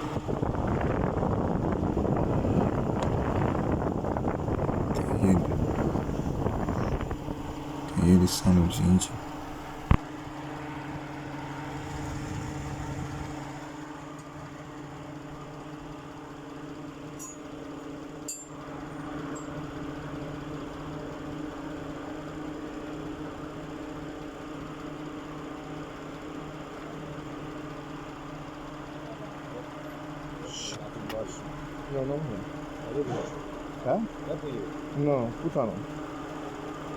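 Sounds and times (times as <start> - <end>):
car engine idling: 0.0 - 15.8.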